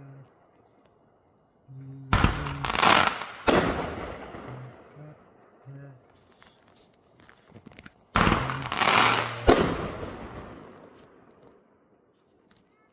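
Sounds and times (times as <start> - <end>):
fireworks bangs: 2.1 - 5.2, 8.2 - 11.7
fireworks crackling: 2.2 - 5.1, 6.1 - 11.6.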